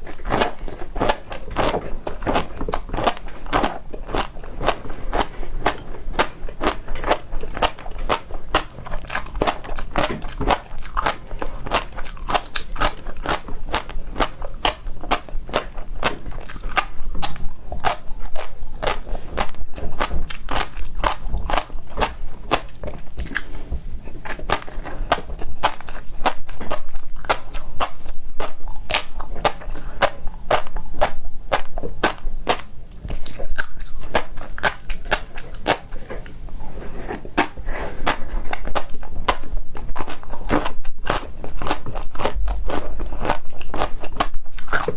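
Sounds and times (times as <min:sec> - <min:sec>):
crunching chews: 0:00.0 - 0:44.9
wet mouth clicks: 0:33.1 - 0:36.4.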